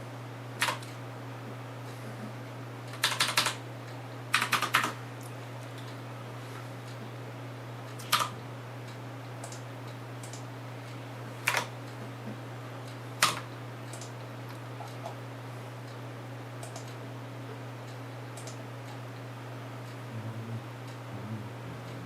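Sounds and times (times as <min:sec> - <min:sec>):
steady low hum: 0:00.0 - 0:22.0
keyboard keystrokes: 0:02.9 - 0:03.6, 0:13.2 - 0:14.1.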